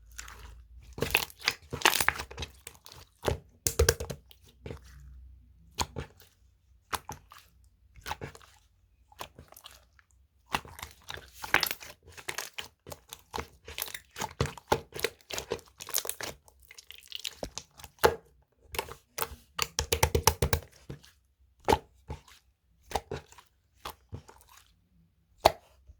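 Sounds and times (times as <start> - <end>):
slime crackling and popping: 1.0 - 2.4.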